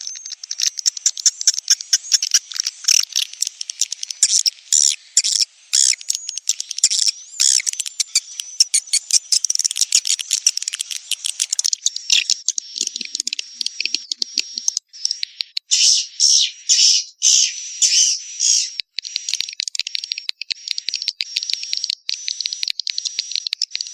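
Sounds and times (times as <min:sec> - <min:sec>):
swiftlets chirping: 0:00.0 - 0:16.1.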